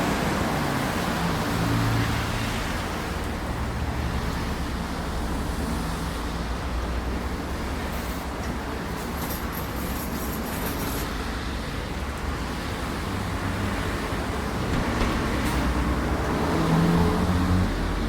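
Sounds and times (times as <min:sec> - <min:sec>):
vehicle motor humming: 0:11.5 - 0:18.0.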